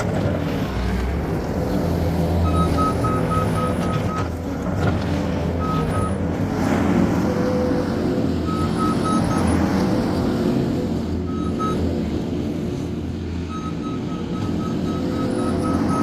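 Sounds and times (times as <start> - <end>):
diesel engine running: 0.0 - 16.0
backup alarm beeps: 2.5 - 4.3, 11.3 - 11.8, 13.5 - 16.0.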